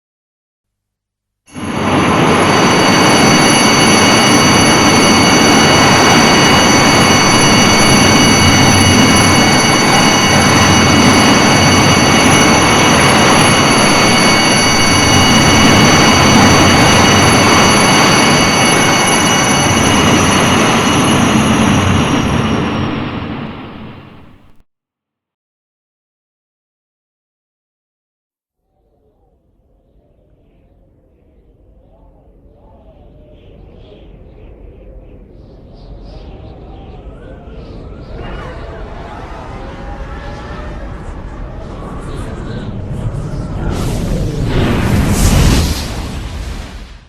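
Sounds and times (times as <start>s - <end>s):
high whistling tones: 1.5s - 24.6s, 30.2s - 44.3s.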